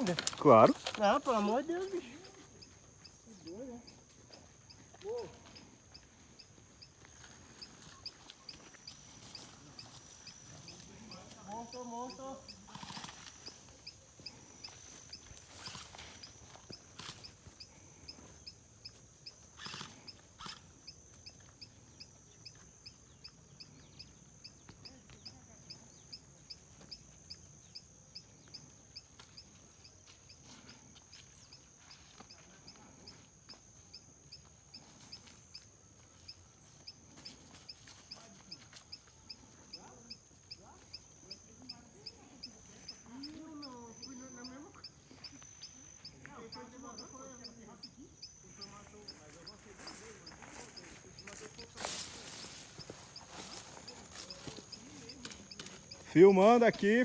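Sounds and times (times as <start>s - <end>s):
high chirping: 38.9s - 57.0s.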